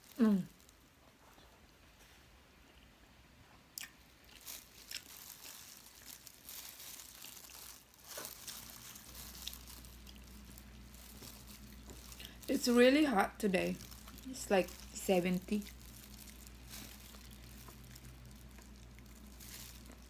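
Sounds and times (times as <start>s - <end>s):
low steady hum: 0.0s - 20.0s
person chewing food: 3.7s - 12.5s, 13.8s - 15.0s, 15.6s - 20.0s.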